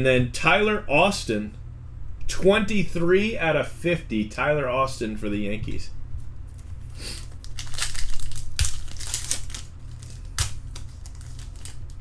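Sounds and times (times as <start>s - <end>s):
cards and packaging crinkling: 6.5s - 12.0s.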